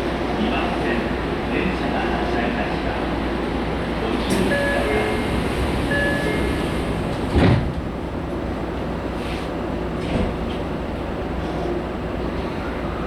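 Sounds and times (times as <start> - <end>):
train wheels rumbling: 0.0 - 13.0.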